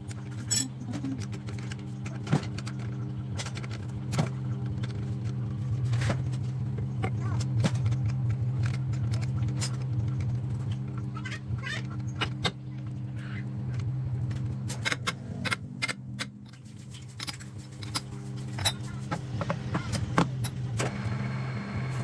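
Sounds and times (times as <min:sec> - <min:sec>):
lathe motor humming: 0:19.2 - 0:22.0.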